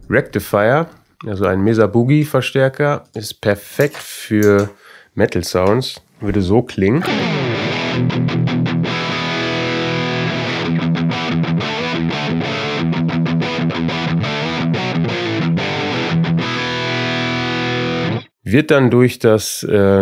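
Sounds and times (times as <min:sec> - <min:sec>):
distorted electric guitar riff: 0:07.0 - 0:18.3.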